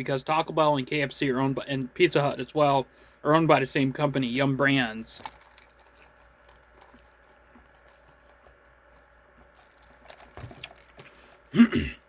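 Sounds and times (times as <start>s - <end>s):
faint chewing with mouth clicks: 5.1s - 11.5s.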